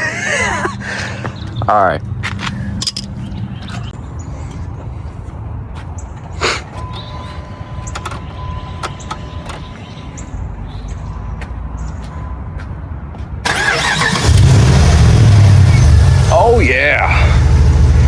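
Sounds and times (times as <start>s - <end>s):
truck engine cranking and starting: 13.4s - 18.0s.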